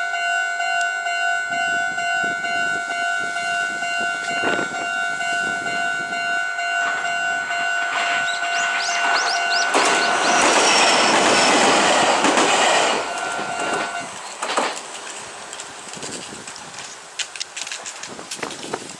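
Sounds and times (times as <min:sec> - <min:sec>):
level crossing warning bell: 0:00.0 - 0:14.4
train rumble and wheel clatter: 0:00.0 - 0:18.9.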